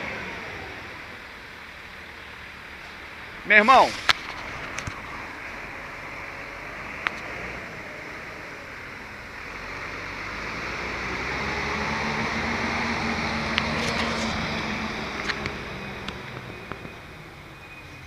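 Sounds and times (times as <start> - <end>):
garbage truck engine humming: 0.0 - 18.0.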